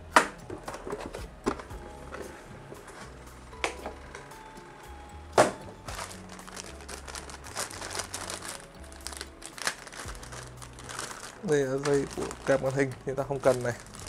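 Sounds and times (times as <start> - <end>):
plastic packaging crinkling: 5.4 - 14.0.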